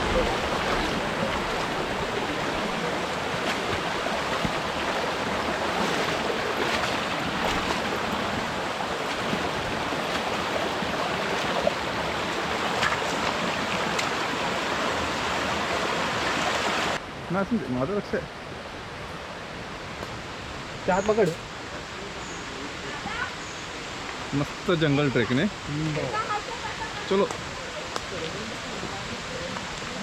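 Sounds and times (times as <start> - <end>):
waterfall rushing: 0.0 - 17.1.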